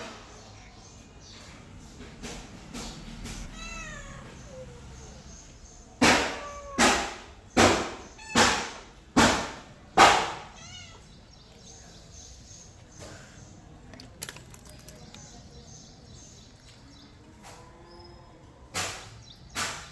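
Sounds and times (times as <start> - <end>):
harsh cat cries: 3.5 - 4.9, 6.2 - 7.0.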